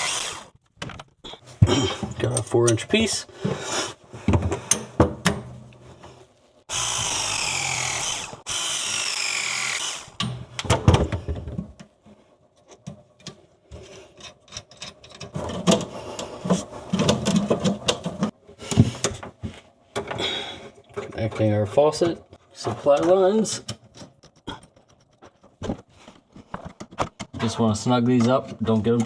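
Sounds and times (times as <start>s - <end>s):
press tool motor whine: 0.0s - 0.5s, 6.7s - 10.2s.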